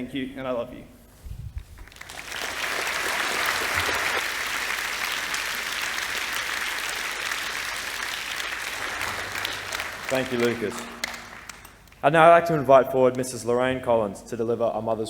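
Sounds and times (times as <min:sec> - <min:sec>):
audience applauding: 0:01.8 - 0:12.0.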